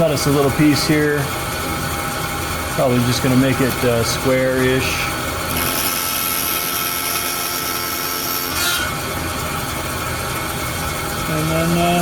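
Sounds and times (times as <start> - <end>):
bandsaw running: 2.7 - 9.8.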